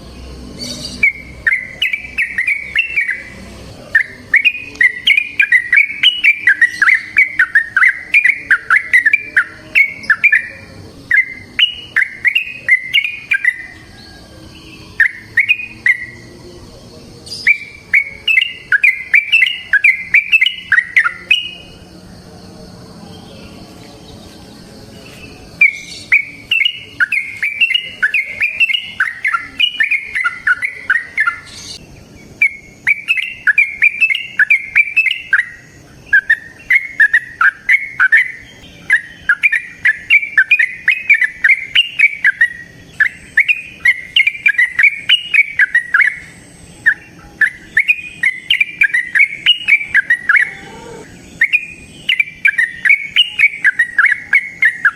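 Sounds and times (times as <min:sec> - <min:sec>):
bird singing bubbling song: 0:00.0 - 0:21.8, 0:23.2 - 0:54.9.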